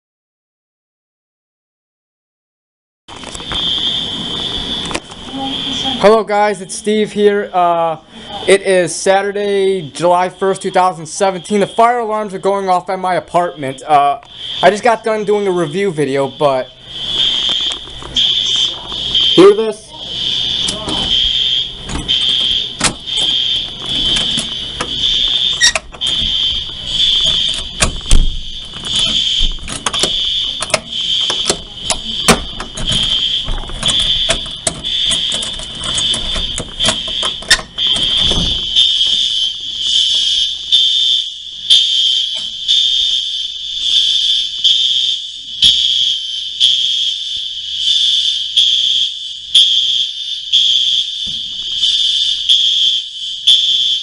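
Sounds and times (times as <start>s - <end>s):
fire alarm pulsing tone: 3.1s - 54.0s
knocks and rustling: 21.8s - 39.4s.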